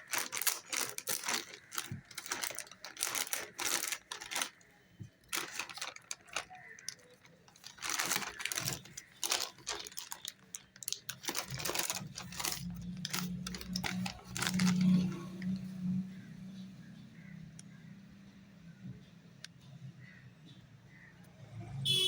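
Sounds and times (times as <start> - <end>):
packaging rustling and clicking: 0.0 - 15.6.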